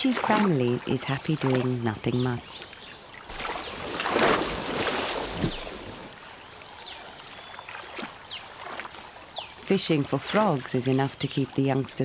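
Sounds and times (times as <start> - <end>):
water splashing and sloshing: 0.0 - 10.6.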